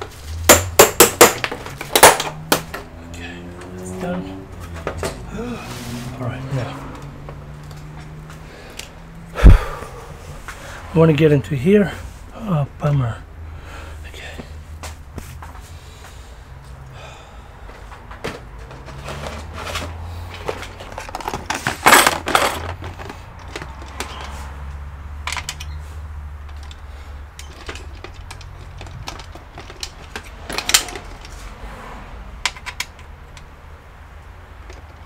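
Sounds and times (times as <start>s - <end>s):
parts clattering: 0.0s - 6.2s, 17.7s - 31.6s, 32.4s - 35.0s
sharp knock: 0.5s - 2.7s
small parts clicking and rattling: 17.9s - 24.5s, 25.2s - 25.8s, 26.4s - 31.4s, 32.4s - 33.6s, 34.6s - 35.0s.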